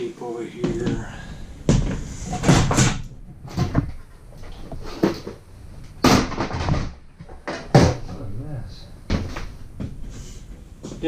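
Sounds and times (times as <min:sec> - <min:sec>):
tools knocking and clunking: 0:00.6 - 0:08.4.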